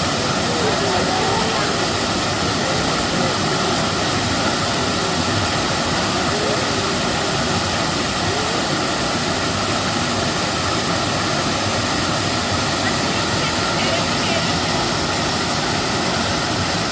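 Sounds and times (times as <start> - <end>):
waterfall roaring: 0.0 - 16.9.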